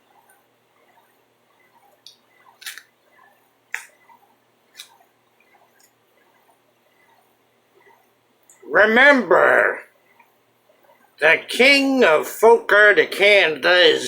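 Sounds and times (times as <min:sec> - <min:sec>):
person chewing: 0:02.5 - 0:02.9.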